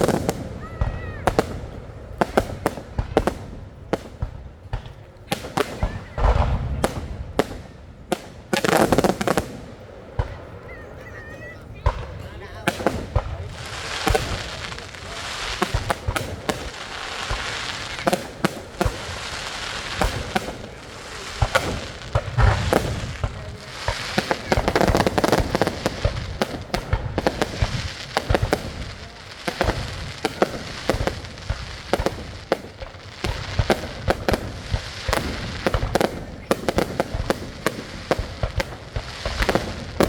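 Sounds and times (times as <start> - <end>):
fireworks crackling and banging: 0.0 - 40.0.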